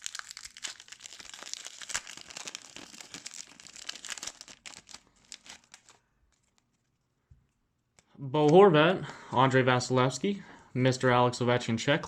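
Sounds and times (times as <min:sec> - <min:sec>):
wrapper crinkling and tearing: 0:00.0 - 0:06.9.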